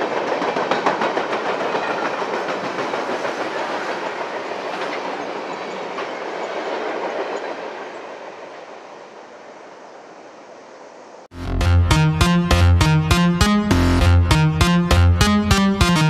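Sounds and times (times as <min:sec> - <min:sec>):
train wheels clattering on rails: 0:00.0 - 0:08.8
electronic music: 0:11.3 - 0:16.0.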